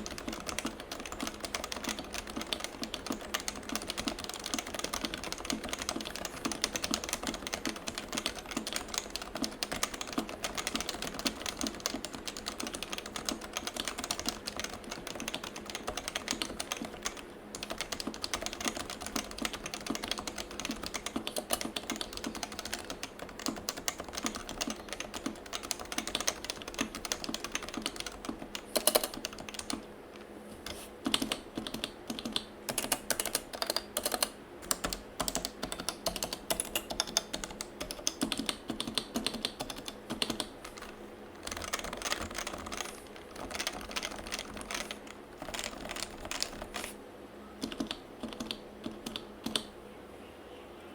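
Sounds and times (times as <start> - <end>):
fast typing on keyboard: 0.0 - 29.9, 31.0 - 47.0, 47.6 - 49.7
keyboard key presses: 31.0 - 47.0, 47.6 - 49.7.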